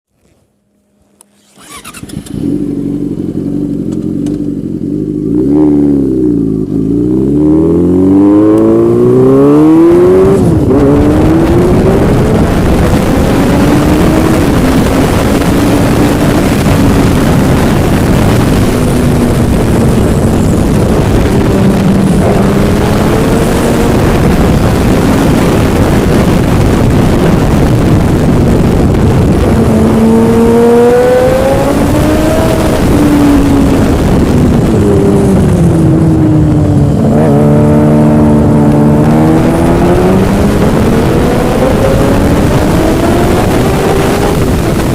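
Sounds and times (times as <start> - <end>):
motorcycle engine revving: 0.2 - 44.9
heavy rushing noise: 8.7 - 44.9.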